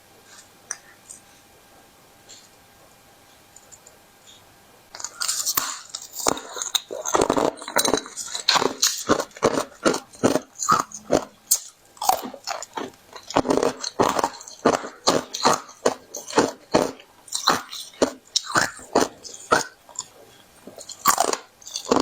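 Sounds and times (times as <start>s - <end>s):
ice sheets being bitten and chewed: 5.0s - 22.0s.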